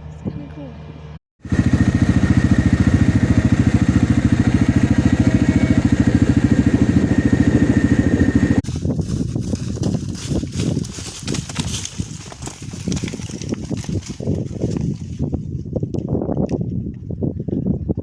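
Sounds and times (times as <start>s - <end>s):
small engine running: 1.4s - 8.6s.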